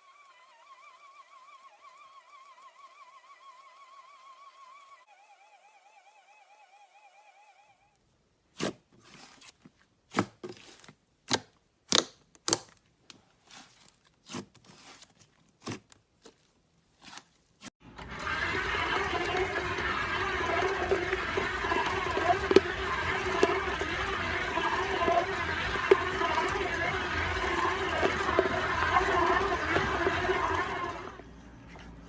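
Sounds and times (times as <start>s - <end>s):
electric hand mixer running: 17.8s - 31.3s.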